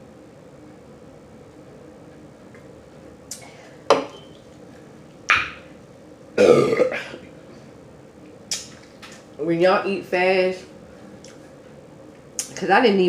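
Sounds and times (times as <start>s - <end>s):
mouth smacks: 5.3s - 5.7s.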